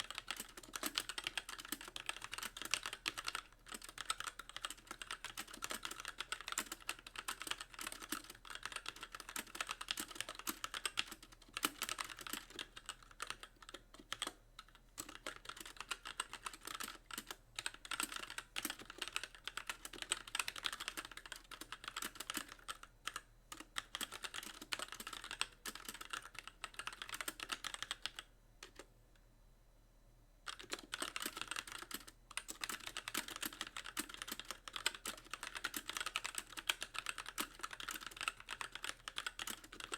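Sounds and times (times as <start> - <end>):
fast typing on mechanical keyboard: 0.0 - 28.9, 30.5 - 39.9.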